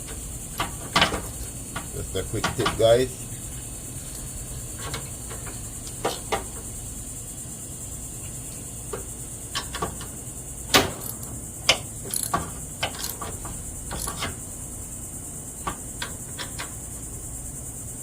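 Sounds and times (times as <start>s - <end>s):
crickets chirring: 0.0s - 18.0s
wrench clicking on bolts: 11.0s - 14.4s.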